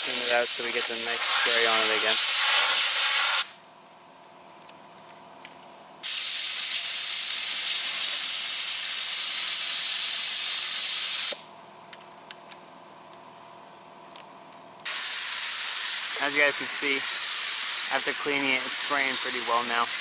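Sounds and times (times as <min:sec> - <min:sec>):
spray gun hissing: 0:00.0 - 0:03.5, 0:06.0 - 0:11.5, 0:14.9 - 0:20.0.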